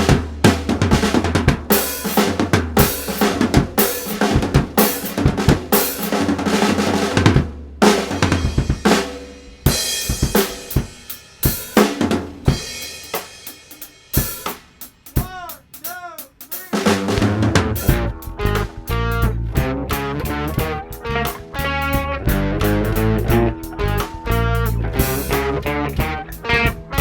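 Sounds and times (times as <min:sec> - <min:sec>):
drum kit beat: 0:00.0 - 0:27.0
sliding pitched notes: 0:17.1 - 0:27.0.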